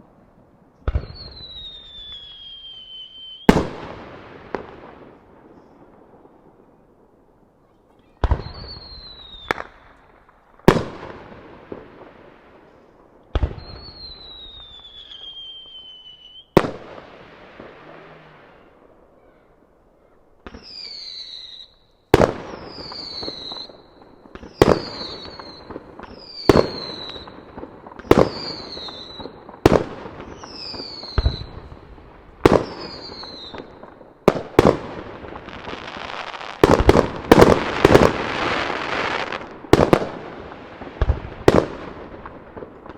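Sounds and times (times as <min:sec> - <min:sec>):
firework crackling: 0:00.0 - 0:07.4, 0:08.1 - 0:19.2, 0:20.4 - 0:42.9
high falling whistles: 0:01.0 - 0:03.6, 0:08.4 - 0:09.7, 0:13.6 - 0:16.6, 0:20.6 - 0:27.6
firework shells bursting: 0:20.4 - 0:31.7.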